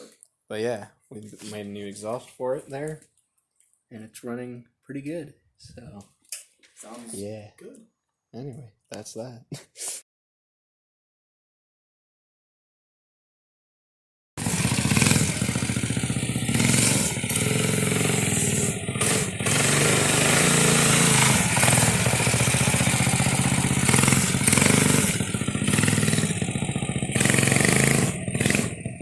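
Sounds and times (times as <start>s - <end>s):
small engine revving: 14.4s - 29.0s.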